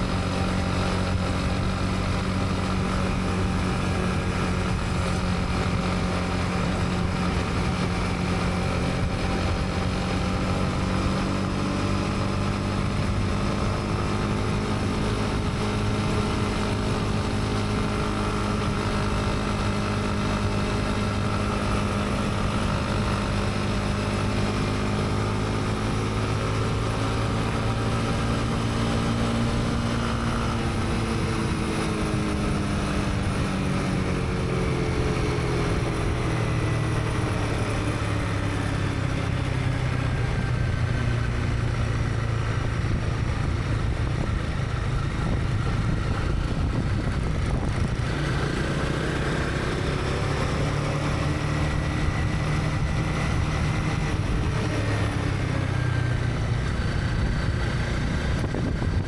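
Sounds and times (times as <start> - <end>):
motorcycle engine cruising: 0.0 - 59.0.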